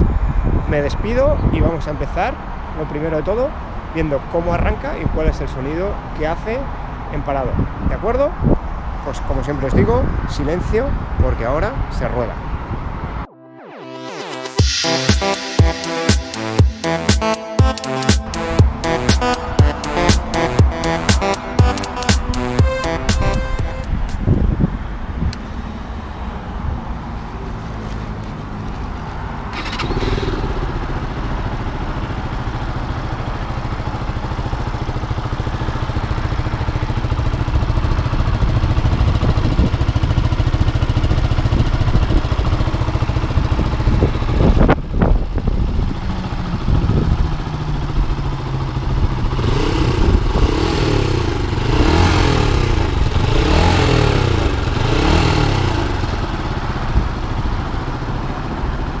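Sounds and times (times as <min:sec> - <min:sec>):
motorcycle engine idling and revving: 0:29.5 - 0:59.0.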